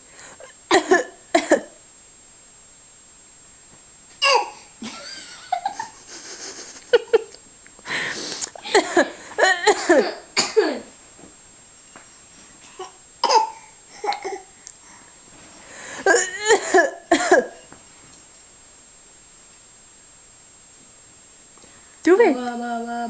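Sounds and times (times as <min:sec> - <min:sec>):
person coughing: 0:00.7 - 0:01.7, 0:08.4 - 0:10.9, 0:12.7 - 0:13.7, 0:16.0 - 0:17.7
laughter-like wavering sounds: 0:04.8 - 0:07.4.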